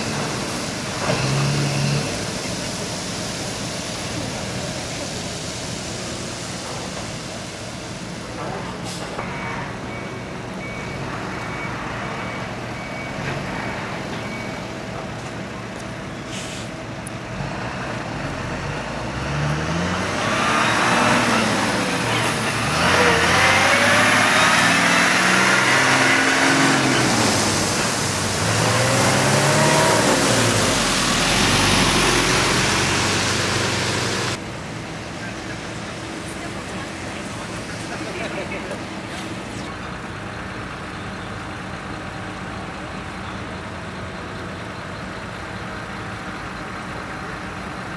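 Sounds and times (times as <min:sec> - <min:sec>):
truck engine revving: 0:00.0 - 0:06.9, 0:16.4 - 0:41.0.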